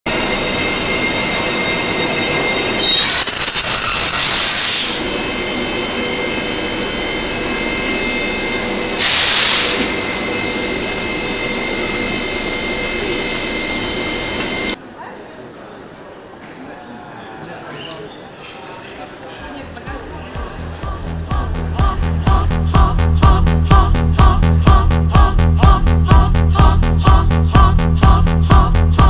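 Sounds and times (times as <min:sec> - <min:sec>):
high whining squeal: 0:00.1 - 0:14.8
train wheel and track noise: 0:00.1 - 0:22.3.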